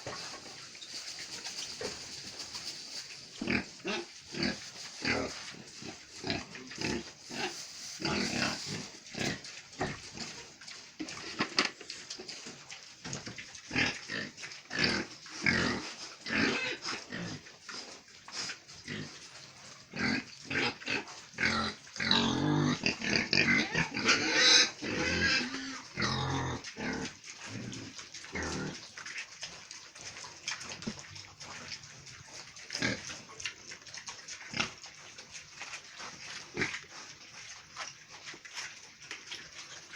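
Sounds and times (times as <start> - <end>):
pigs grunting and squealing: 3.3 - 11.6, 13.6 - 39.9.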